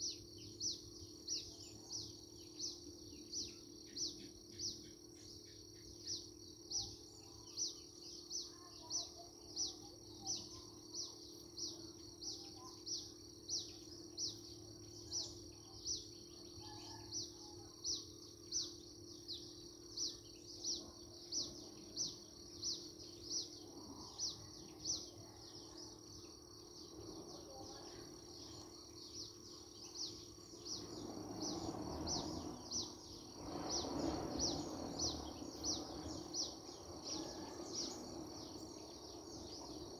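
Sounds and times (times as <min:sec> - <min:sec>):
faint low hum: 0:00.0 - 0:39.9
high drone of birds or insects: 0:00.0 - 0:39.9
soft rushing noise: 0:30.4 - 0:39.9.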